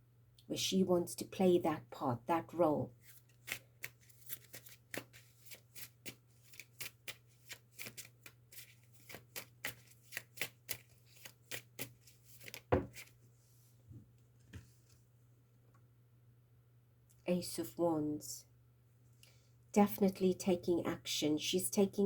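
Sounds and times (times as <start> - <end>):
cards being shuffled: 3.0 - 13.2.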